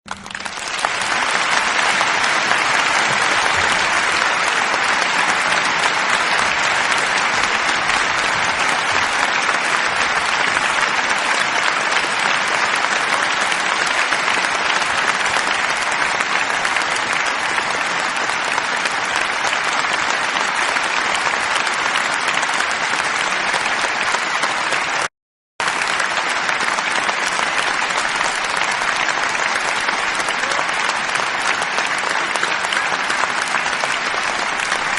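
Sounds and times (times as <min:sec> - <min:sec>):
audience applauding: 0:00.1 - 0:34.9.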